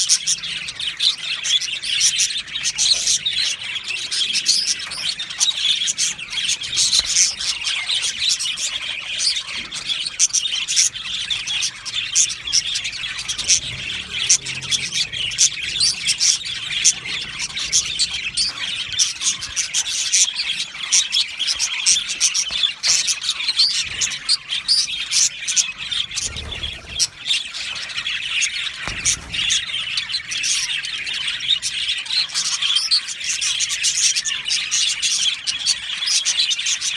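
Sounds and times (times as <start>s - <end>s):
budgerigars chirping: 0.0s - 36.9s.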